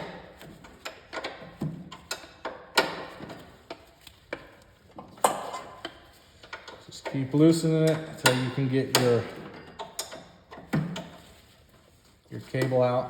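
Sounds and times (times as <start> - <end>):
wrench clicking on metal bolt: 6.4 - 10.4.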